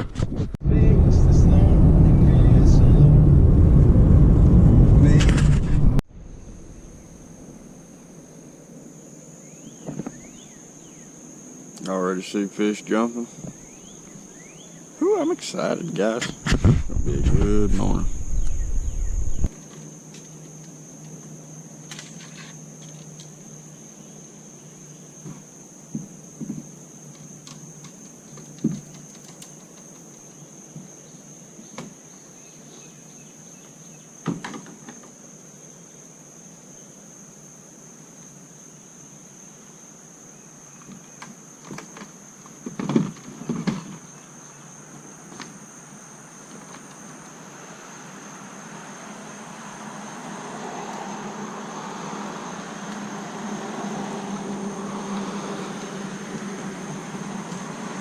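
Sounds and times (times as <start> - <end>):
insect chorus trilling: 0.7 - 5.3, 6.2 - 58.0
crickets chirping: 0.7 - 58.0
knocks and thumps: 16.4 - 19.5.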